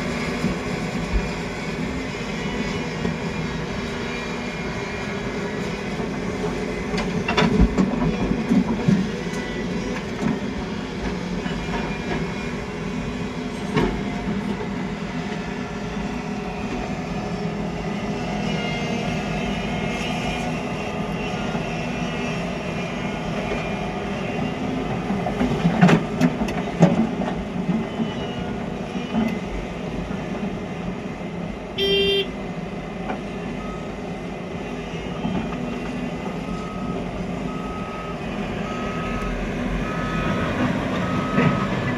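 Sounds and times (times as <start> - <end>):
diesel excavator engine: 0.0 - 41.9
brief beep: 31.8 - 32.3.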